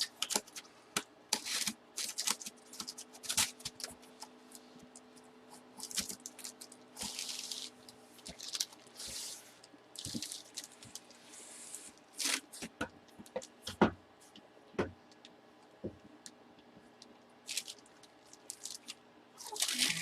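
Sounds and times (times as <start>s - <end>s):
plastic packaging rustling: 1.4s - 4.3s, 5.6s - 11.2s, 17.5s - 20.0s.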